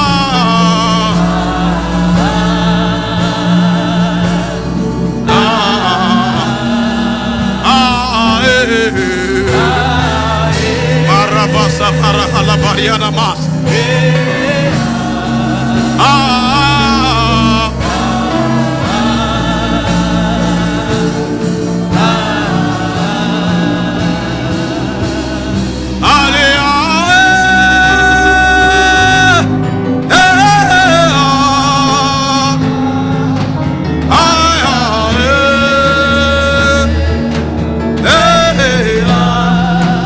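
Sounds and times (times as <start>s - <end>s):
gospel singing: 0.0s - 40.0s
steady bass line: 0.0s - 40.0s.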